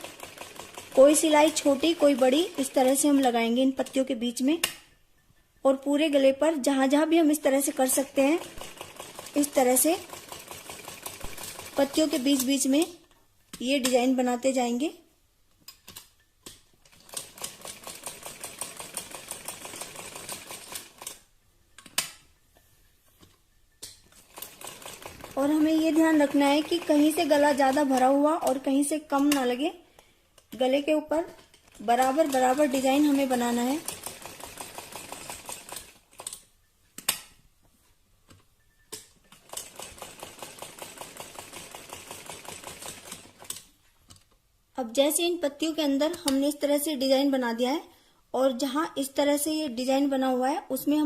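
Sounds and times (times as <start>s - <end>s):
sewing machine clicks: 0.0s - 4.0s, 23.8s - 28.6s, 31.3s - 37.2s, 38.9s - 44.2s
sewing machine stitching: 0.0s - 4.0s, 7.5s - 12.6s, 16.9s - 21.2s, 24.1s - 28.6s, 31.3s - 36.4s, 39.3s - 43.7s.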